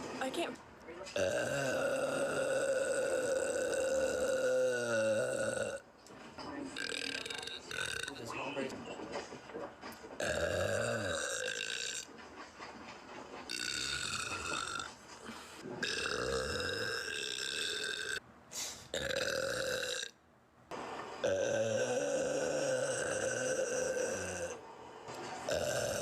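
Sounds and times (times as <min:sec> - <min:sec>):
woman burping: 0:01.2 - 0:05.8, 0:10.2 - 0:12.1, 0:13.6 - 0:14.9, 0:15.8 - 0:18.2, 0:19.0 - 0:20.2, 0:21.2 - 0:24.6.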